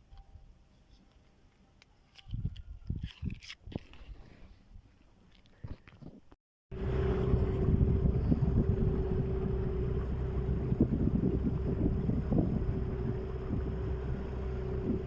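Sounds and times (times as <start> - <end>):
boat motor running: 6.7 - 15.0
wind buffeting microphone: 6.8 - 15.0.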